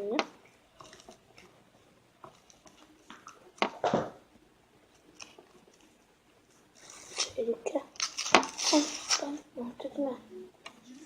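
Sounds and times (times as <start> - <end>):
plastic wrapper crinkling: 0.8 - 1.5, 2.2 - 3.4, 4.9 - 6.0, 6.8 - 9.4.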